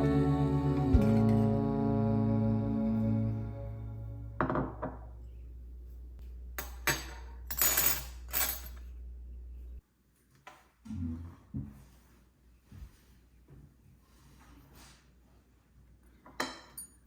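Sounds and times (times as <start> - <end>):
background song with low drone: 0.0 - 4.6
dishware clinking and clattering: 6.6 - 8.8, 16.3 - 17.0.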